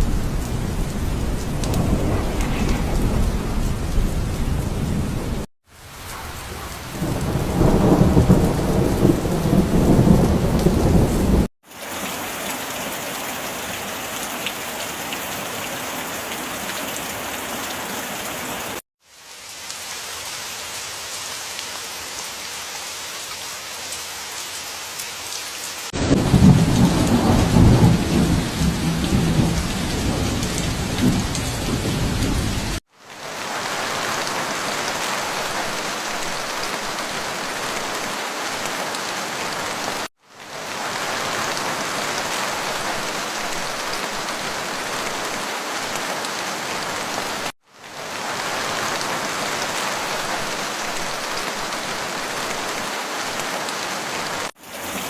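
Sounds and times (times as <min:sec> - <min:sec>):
thunder rolling: 0:00.0 - 0:05.5, 0:26.0 - 0:32.8
heavy rain: 0:00.0 - 0:55.0.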